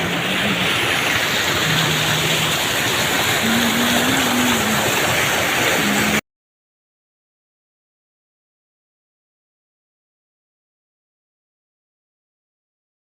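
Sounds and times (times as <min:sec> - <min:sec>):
waterfall rushing: 0:00.0 - 0:06.2.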